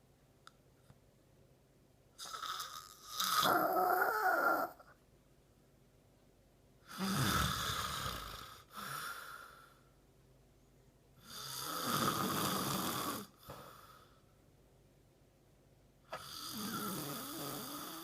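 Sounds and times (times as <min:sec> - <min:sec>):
man snoring: 0:02.2 - 0:04.8, 0:06.9 - 0:09.5, 0:11.2 - 0:13.9, 0:16.1 - 0:18.0.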